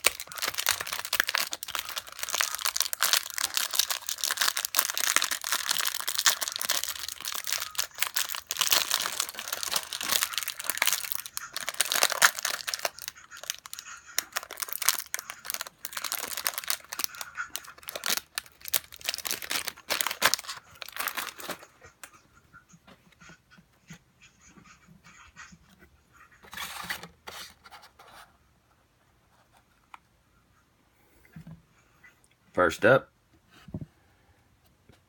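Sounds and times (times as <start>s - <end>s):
plastic wrapping crinkling and tearing: 0.0s - 21.7s.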